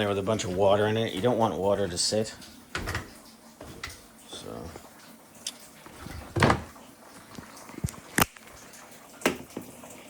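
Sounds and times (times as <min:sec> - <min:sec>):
knocks and clunks: 0:02.7 - 0:04.0, 0:05.9 - 0:06.8.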